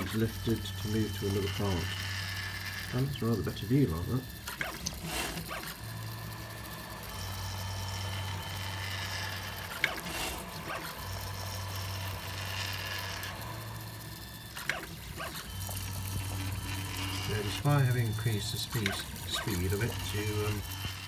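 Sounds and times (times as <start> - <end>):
printer stepper motors whining: 0.0 - 21.0.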